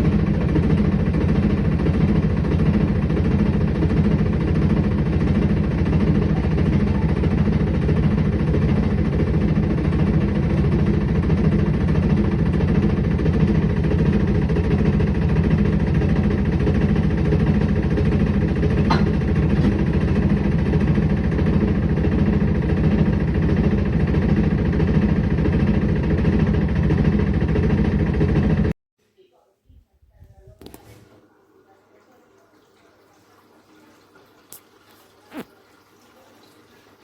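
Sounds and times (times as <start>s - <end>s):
motor humming: 0.0s - 28.7s.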